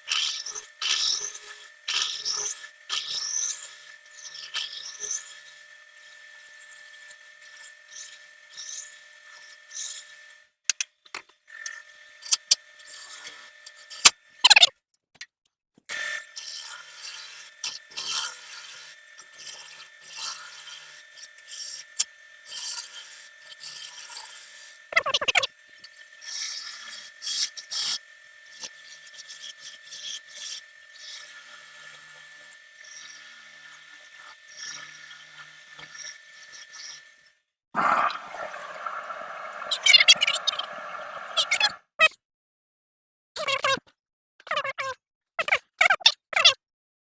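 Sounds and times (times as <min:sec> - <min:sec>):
lathe motor whine: 0:37.8 - 0:41.8
turning tool scraping wood: 0:37.8 - 0:41.8.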